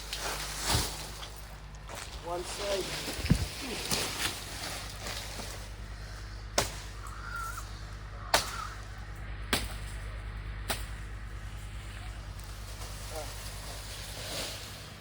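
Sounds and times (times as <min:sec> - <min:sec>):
sharp cracks: 0:06.5 - 0:11.1.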